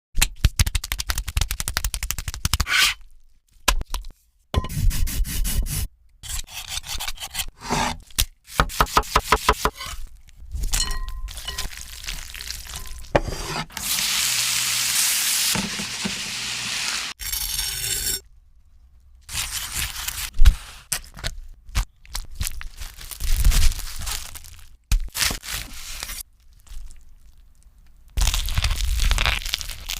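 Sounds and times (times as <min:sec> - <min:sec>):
rubbing and scraping: 0:04.7 - 0:10.7, 0:12.8 - 0:13.9
food sizzling: 0:11.3 - 0:17.2.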